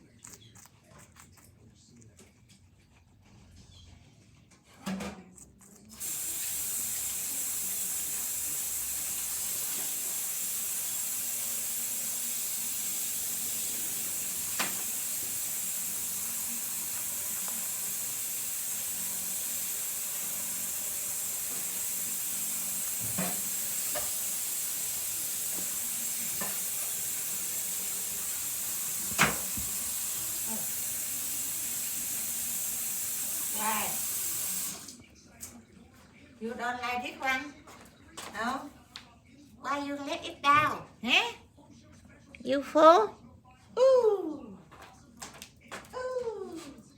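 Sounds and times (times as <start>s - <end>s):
food sizzling in a pan: 6.0s - 34.9s.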